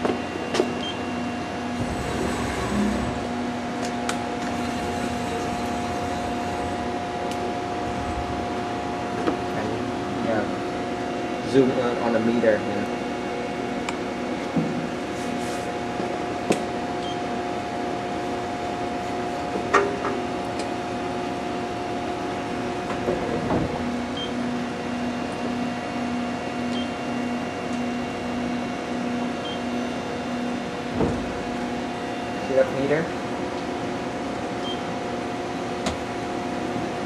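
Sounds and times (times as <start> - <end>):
machine tool humming: 1.2 - 10.2
pulsing low tone: 1.6 - 9.2.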